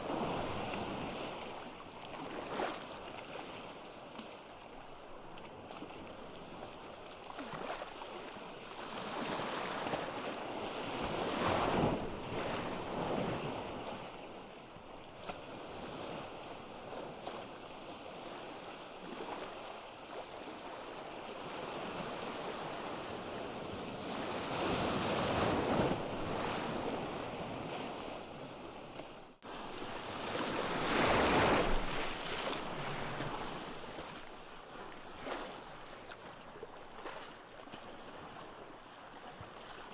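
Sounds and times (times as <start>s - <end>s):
ocean waves breaking: 29.5s - 36.0s.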